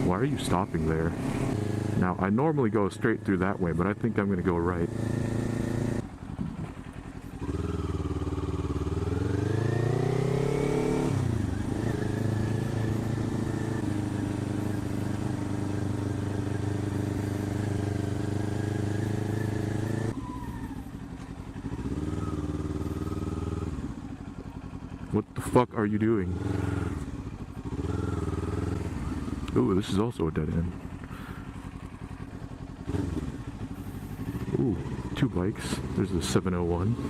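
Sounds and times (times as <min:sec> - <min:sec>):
motorcycle engine accelerating: 0:00.0 - 0:37.0.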